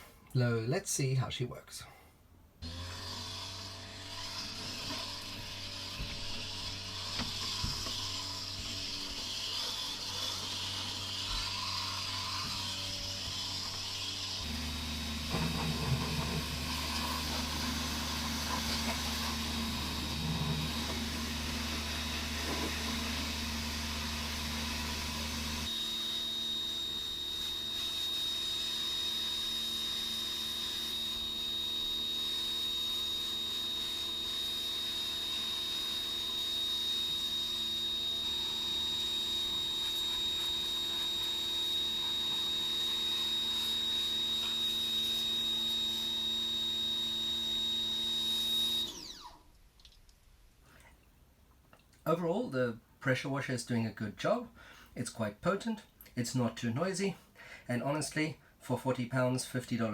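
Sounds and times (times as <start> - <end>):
pressure washer motor hum: 9.9 - 48.9.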